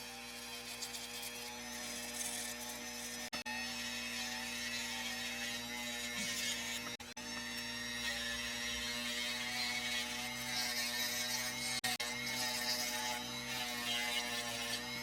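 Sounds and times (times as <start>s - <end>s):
rotary tool sanding stone: 0.0s - 15.0s.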